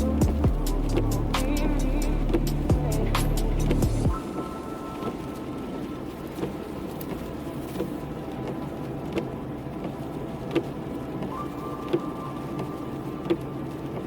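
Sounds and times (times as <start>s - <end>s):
car engine running: 0.0s - 4.2s
road noise: 0.0s - 14.0s.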